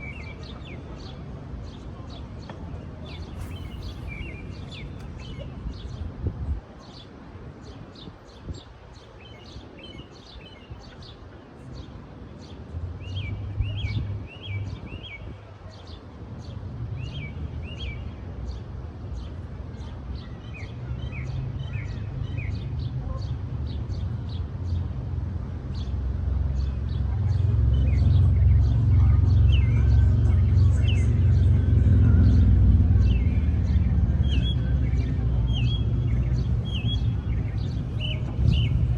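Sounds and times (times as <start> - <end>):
low rumble: 3.2 - 6.4
small birds chirping: 33.1 - 38.9.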